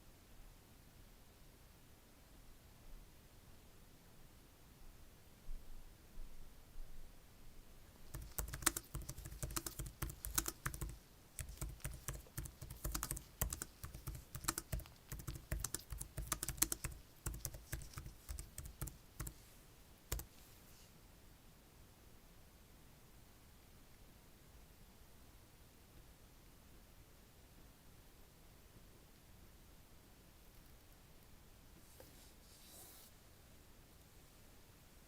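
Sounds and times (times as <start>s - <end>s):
keyboard typing: 8.1s - 19.4s, 20.1s - 20.3s.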